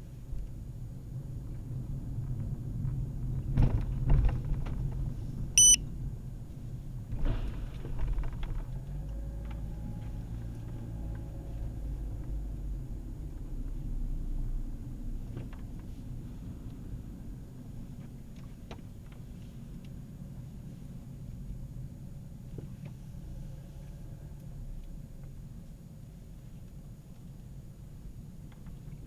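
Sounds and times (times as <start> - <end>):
short high electronic beep: 5.6 - 5.8.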